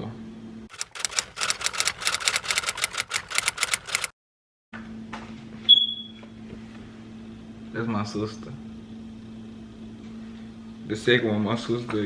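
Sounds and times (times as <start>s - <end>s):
rapid even clicking: 0.7s - 4.1s.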